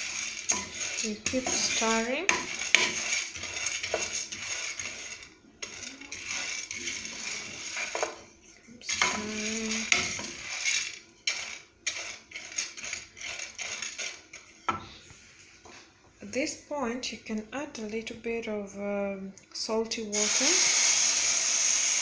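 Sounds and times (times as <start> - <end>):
seeds rattling in a dry pan: 0.0 - 14.6.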